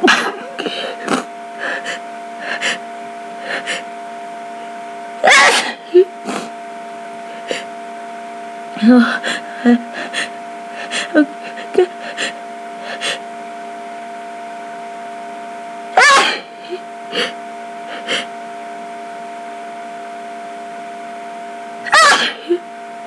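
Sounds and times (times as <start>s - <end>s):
person sneezing: 0.0s - 1.9s, 5.2s - 6.5s, 16.0s - 17.4s, 21.9s - 22.6s
person sniffing and breathing: 0.5s - 2.8s, 3.4s - 3.8s, 6.2s - 6.5s, 9.0s - 13.2s, 16.6s - 18.3s.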